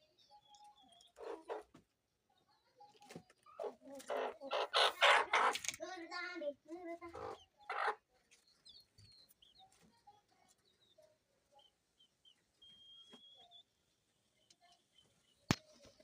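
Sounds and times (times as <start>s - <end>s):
chickens clucking: 0.2s - 2.0s, 2.8s - 5.9s, 6.9s - 16.0s
faint high peeps: 8.7s - 15.5s.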